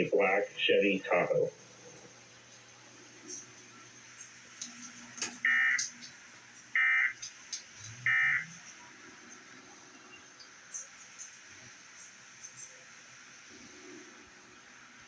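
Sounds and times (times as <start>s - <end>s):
buzzy digital data tones: 8.0s - 8.7s.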